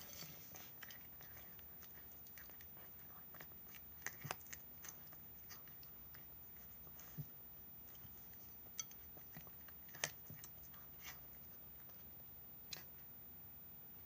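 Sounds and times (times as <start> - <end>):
cat crunching food: 0.4 - 13.2.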